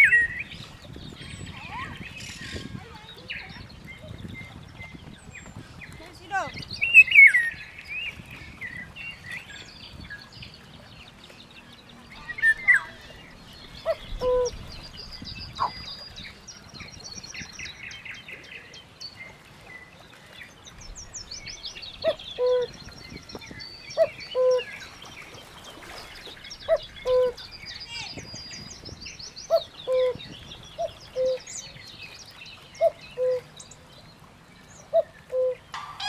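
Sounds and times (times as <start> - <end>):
birds chirping and trilling: 0.0 - 36.0
loud falling bird call: 35.4 - 36.0.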